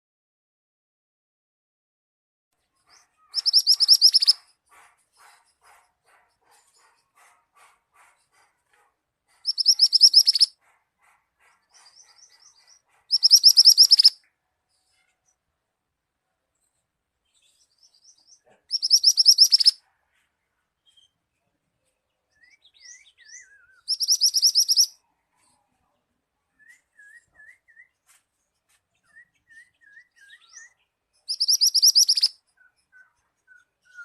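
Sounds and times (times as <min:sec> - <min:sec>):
soft rapid ticking bird calls: 0:03.2 - 0:04.5, 0:09.3 - 0:10.5, 0:11.1 - 0:14.2, 0:18.7 - 0:19.8, 0:23.9 - 0:24.9, 0:31.2 - 0:32.3
songbird high trills: 0:03.3 - 0:04.4, 0:09.5 - 0:10.5, 0:13.1 - 0:14.1, 0:18.7 - 0:19.8, 0:22.8 - 0:24.9, 0:31.3 - 0:32.3.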